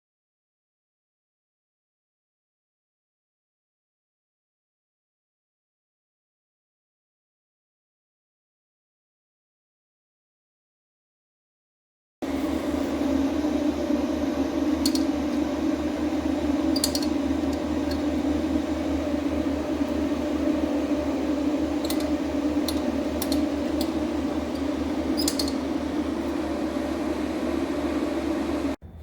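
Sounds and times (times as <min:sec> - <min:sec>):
motor-driven machine running: 0:12.2 - 0:28.8.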